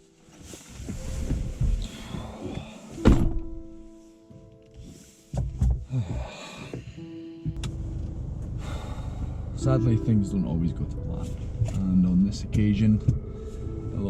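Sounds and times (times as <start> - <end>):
slow background music: 0.0 - 14.0
loud thump: 3.0 - 3.6.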